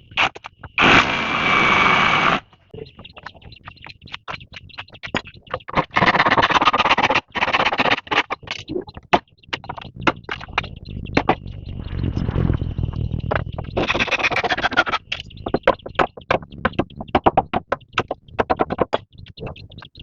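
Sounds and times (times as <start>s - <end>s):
sharp knocks and clatter: 13.3s - 19.8s.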